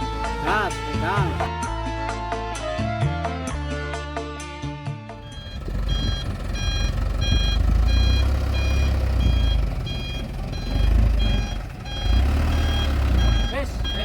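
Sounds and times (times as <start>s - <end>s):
truck reversing alarm beeping: 0.0s - 1.5s, 5.2s - 14.0s
low engine rumble: 5.1s - 14.0s.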